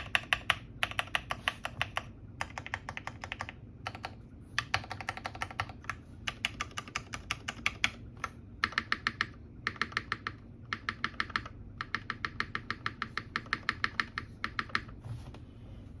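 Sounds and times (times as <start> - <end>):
mechanical keyboard typing: 0.0 - 15.0.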